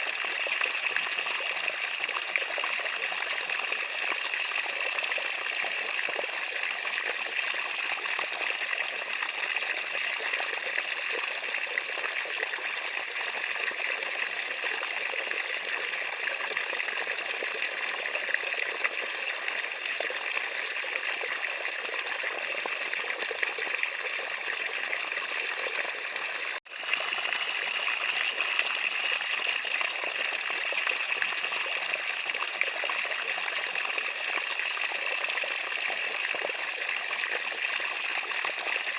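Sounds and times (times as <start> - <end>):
water trickling: 10.2 - 38.9.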